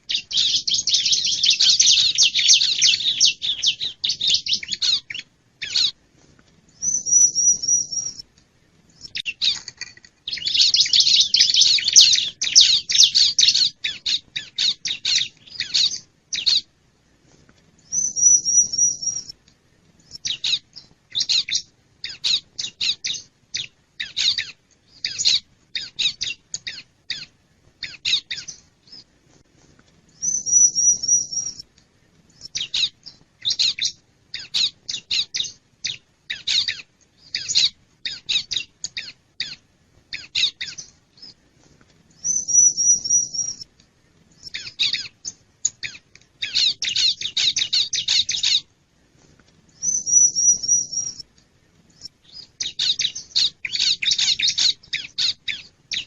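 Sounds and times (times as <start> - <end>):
bird high trill: 6.8 - 8.2, 17.9 - 19.3, 30.2 - 31.6, 42.2 - 43.6, 49.8 - 51.2.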